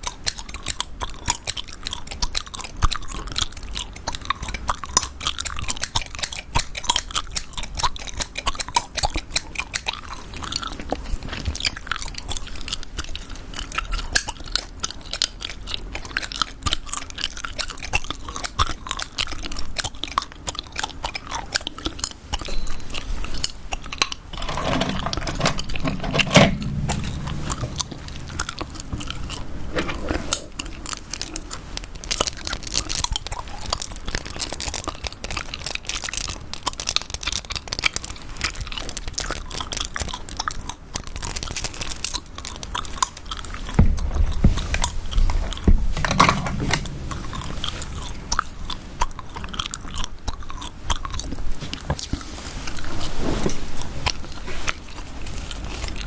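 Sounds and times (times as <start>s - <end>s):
louder low sound: 24.9s - 29.7s.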